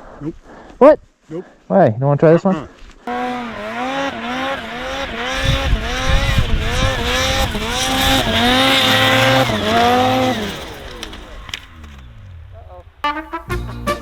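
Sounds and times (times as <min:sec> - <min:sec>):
low thumps: 0:03.1 - 0:14.0
snowmobile engine revving: 0:03.1 - 0:14.0.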